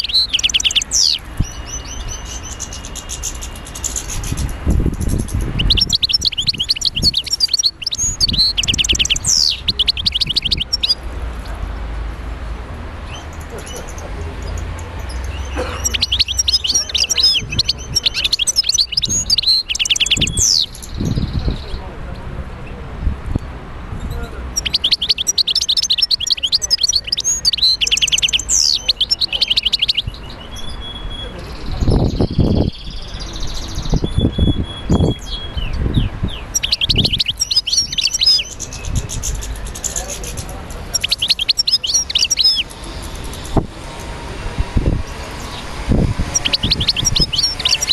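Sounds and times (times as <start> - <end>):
birds chirping: 0.0 - 47.9.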